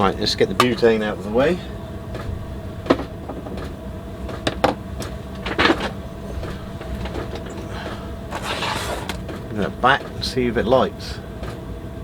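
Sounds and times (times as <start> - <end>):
low background rumble: 0.0 - 12.0
knocks and clicks of objects handled: 2.1 - 10.1.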